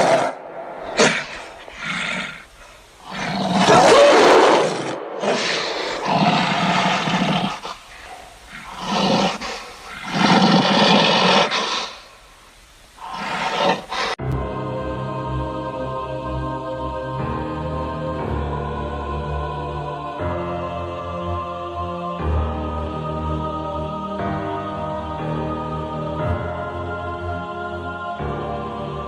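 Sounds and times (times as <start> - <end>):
animal roaring: 0.0 - 12.0, 13.0 - 14.2.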